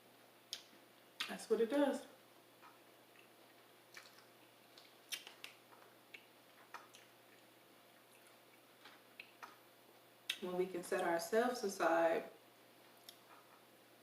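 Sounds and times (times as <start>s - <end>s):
faint chewing: 2.6s - 9.6s
wet mouth clicks and smacks: 3.1s - 7.5s, 8.1s - 9.6s.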